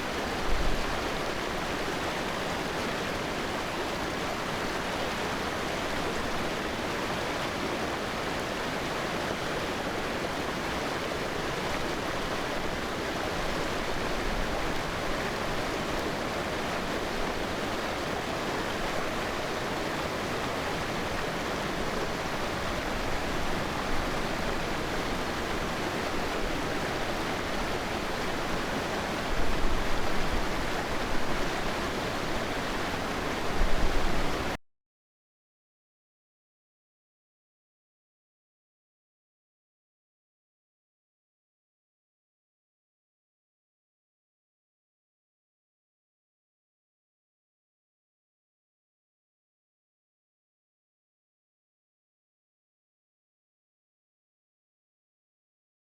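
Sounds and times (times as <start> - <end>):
flowing stream rushing: 0.0 - 34.6.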